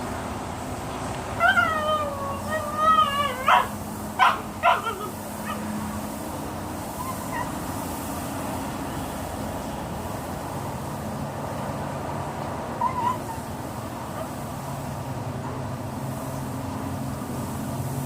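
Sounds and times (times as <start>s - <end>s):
steady background hum: 0.0s - 18.0s
dog yelping: 1.4s - 5.7s, 7.0s - 7.6s, 12.8s - 13.5s.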